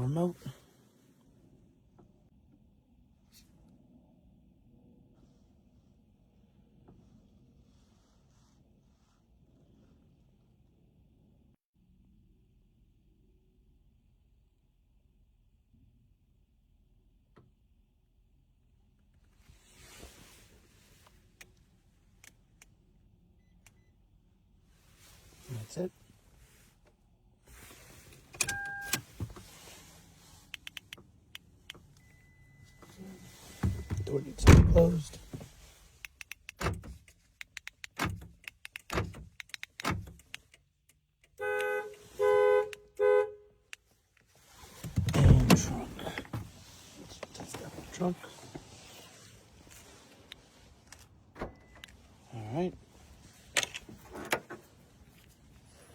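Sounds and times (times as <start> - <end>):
soft rustle: 5.1 - 10.6, 19.3 - 22.2, 24.6 - 28.4, 29.0 - 30.6, 31.9 - 34.3, 34.9 - 36.0, 43.8 - 55.9
car horn honks: 41.4 - 43.6
car door locks clunking: 44.9 - 46.5.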